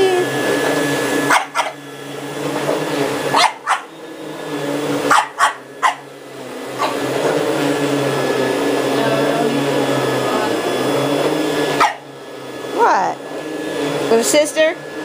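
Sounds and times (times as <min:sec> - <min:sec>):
vacuum cleaner running: 0:00.0 - 0:15.0
dog barking: 0:01.2 - 0:01.8, 0:03.3 - 0:04.0, 0:05.1 - 0:06.1, 0:06.8 - 0:07.0, 0:11.8 - 0:12.1.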